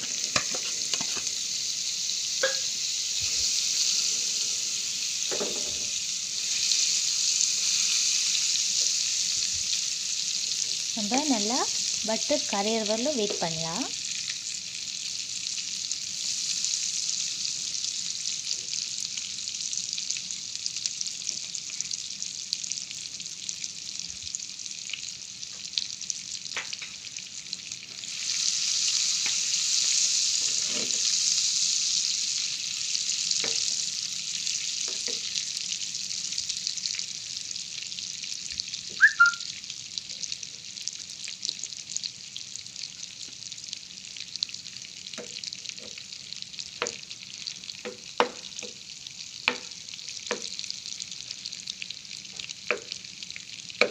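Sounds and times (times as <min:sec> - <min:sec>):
butter sizzling in a pan: 0:00.0 - 0:53.9
high chirp: 0:39.0 - 0:39.5.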